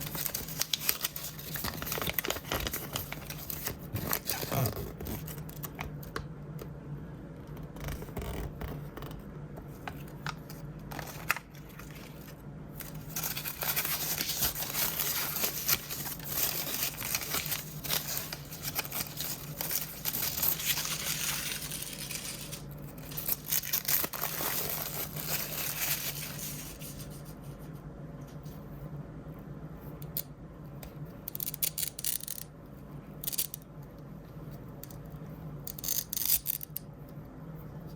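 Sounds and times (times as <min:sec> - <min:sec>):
plastic packaging crinkling: 0:00.0 - 0:06.1, 0:10.0 - 0:27.2.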